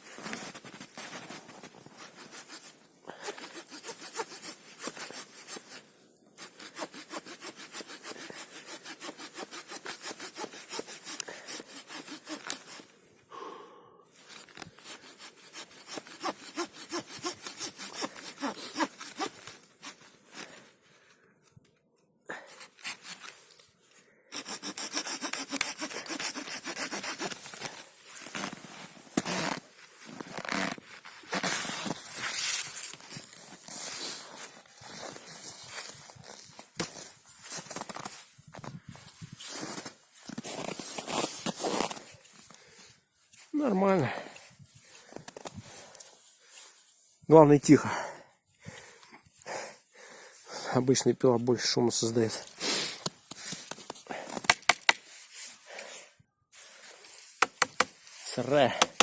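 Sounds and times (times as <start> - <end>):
small saw cutting a stick: 2.1 - 5.8, 6.4 - 12.9, 14.7 - 20.0, 22.6 - 23.3, 24.3 - 27.8, 52.4 - 55.1, 57.4 - 59.0.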